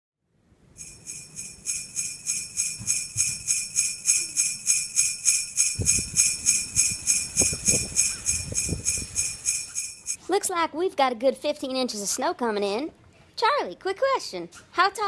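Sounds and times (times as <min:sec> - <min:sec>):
sleigh bells shaken: 0:00.8 - 0:10.2
low thumps: 0:02.4 - 0:10.2.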